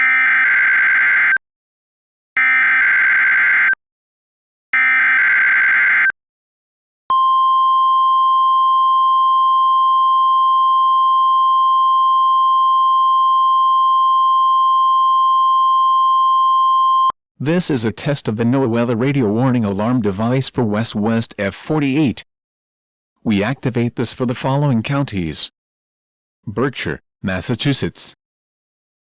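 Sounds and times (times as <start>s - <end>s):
steady warning alarm tone: 0.0s - 1.4s, 2.4s - 3.8s, 4.8s - 6.1s.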